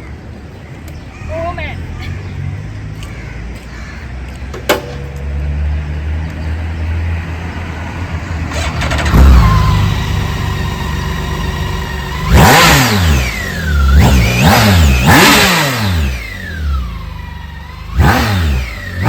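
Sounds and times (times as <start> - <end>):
motorcycle engine revving: 4.5 - 19.0.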